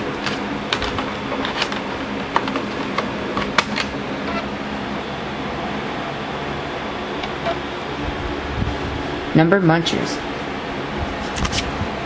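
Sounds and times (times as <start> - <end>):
laptop clicks and clacks: 0.2 - 3.9.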